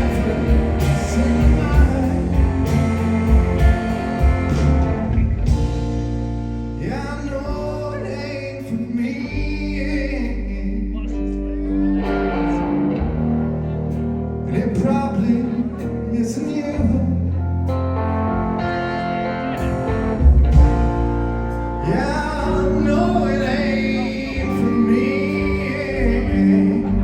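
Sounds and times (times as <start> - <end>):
person singing: 0.0 - 4.8, 6.8 - 12.9, 21.8 - 27.0
live band playing: 0.0 - 7.7, 17.7 - 26.6.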